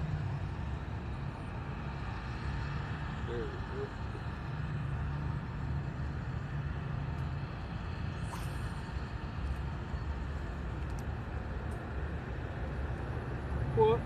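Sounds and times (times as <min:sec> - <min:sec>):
low outdoor rumble: 0:00.0 - 0:14.0.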